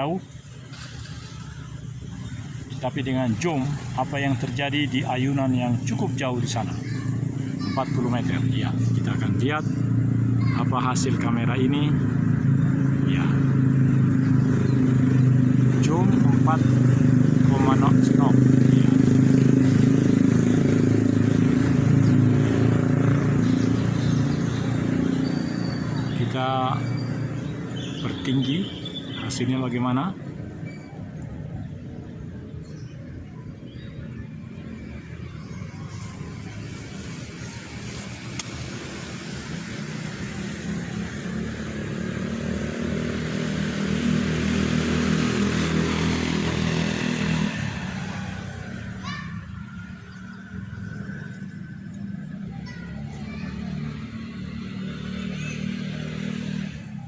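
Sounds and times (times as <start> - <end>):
motor engine running: 0.8 - 29.2.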